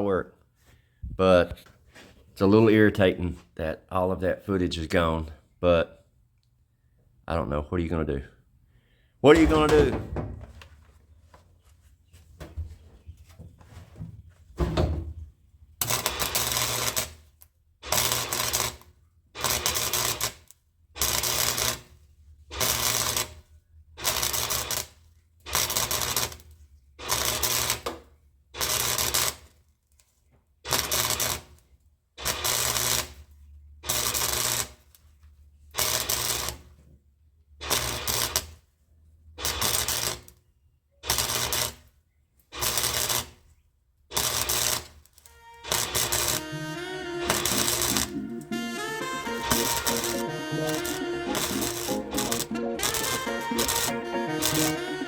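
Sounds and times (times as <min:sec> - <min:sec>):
crackling welding bursts: 0:15.8 - 0:17.2, 0:17.9 - 0:21.9, 0:22.5 - 0:23.4, 0:24.0 - 0:27.9, 0:28.6 - 0:29.4, 0:30.7 - 0:31.6, 0:32.2 - 0:33.2, 0:33.9 - 0:34.8, 0:35.8 - 0:36.6, 0:37.6 - 0:38.6, 0:39.4 - 0:40.3, 0:41.1 - 0:41.9, 0:42.6 - 0:43.4, 0:44.1 - 0:45.0, 0:45.7 - 0:55.0.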